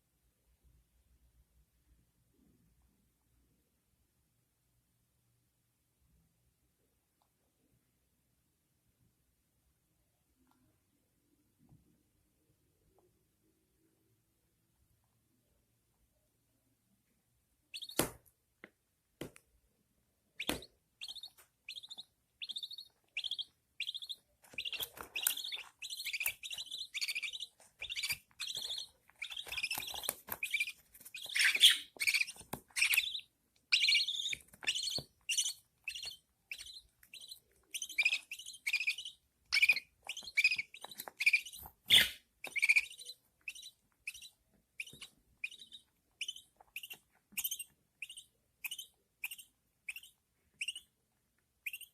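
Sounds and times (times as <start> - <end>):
chicks cheeping: 17.7 - 18.1, 20.4 - 50.9.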